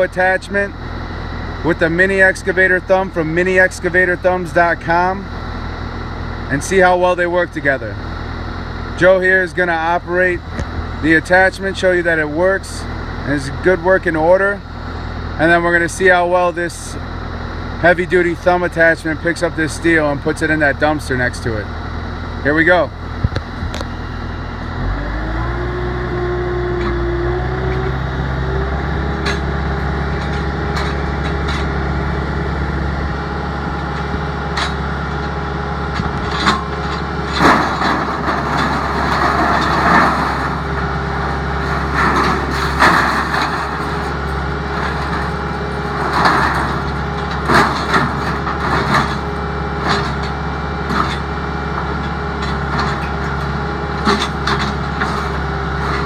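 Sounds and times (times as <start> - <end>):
skid steer engine revving: 0.0 - 56.0
metallic clanks and bangs: 29.1 - 31.9, 33.8 - 51.3, 52.0 - 56.0.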